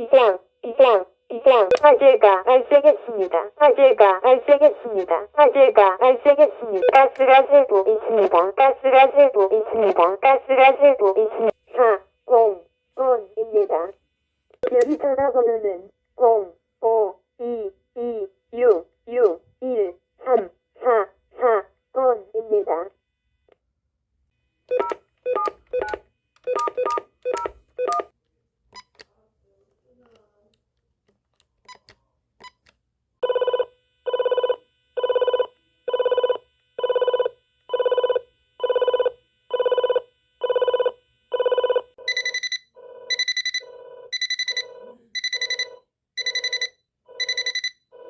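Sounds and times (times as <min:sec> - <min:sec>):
short keypad beeps: 0:24.7 - 0:28.1, 0:42.1 - 0:47.8
door phone ring tone: 0:33.2 - 0:48.0.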